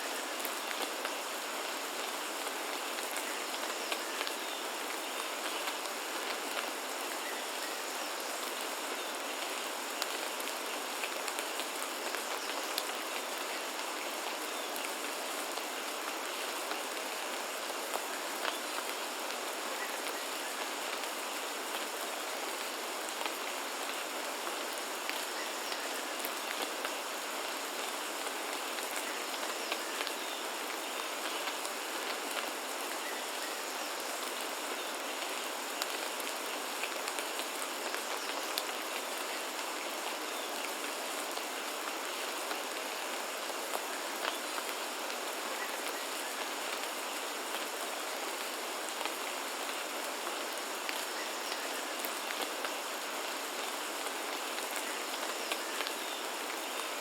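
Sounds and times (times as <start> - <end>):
rain falling on foliage: 0.0 - 57.0.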